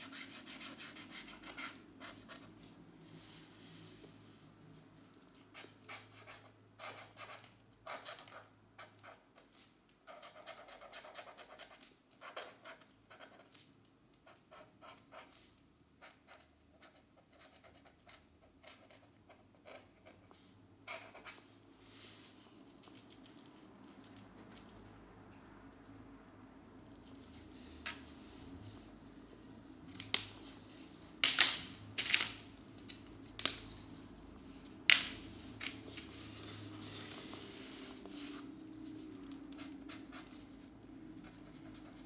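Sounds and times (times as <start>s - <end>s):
markers scratching on paper: 10.1s - 13.6s, 39.2s - 42.0s.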